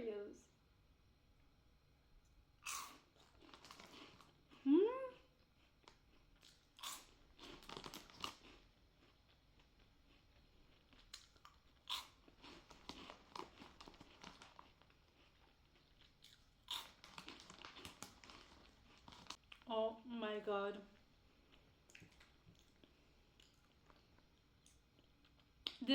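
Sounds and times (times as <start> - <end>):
crunching corn puffs: 2.6 - 4.7, 5.6 - 19.6.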